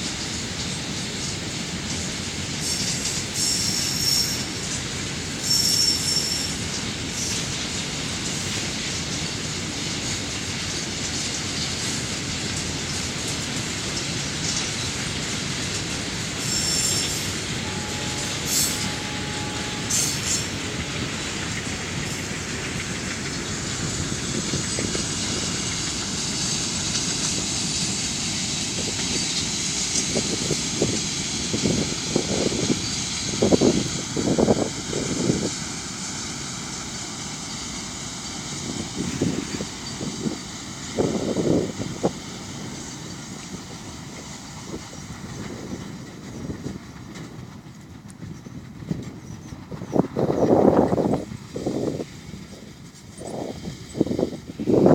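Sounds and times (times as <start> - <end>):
freight train wagons rumbling: 0.0 - 54.9
wheels clacking over rail joints: 0.0 - 54.9
train wheels squealing: 2.6 - 7.5, 16.3 - 54.9.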